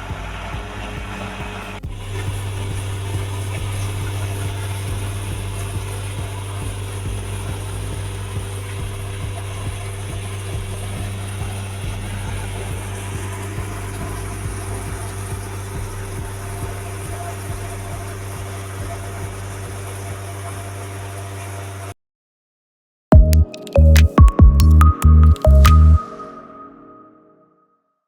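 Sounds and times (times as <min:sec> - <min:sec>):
road and tyre noise: 0:00.0 - 0:21.9
vehicle engine hum: 0:00.0 - 0:22.0.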